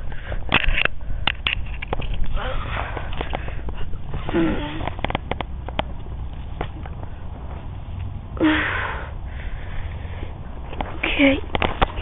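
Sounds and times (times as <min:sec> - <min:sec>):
breathing close to microphone: 0:00.0 - 0:01.3, 0:02.2 - 0:05.0, 0:08.4 - 0:11.0.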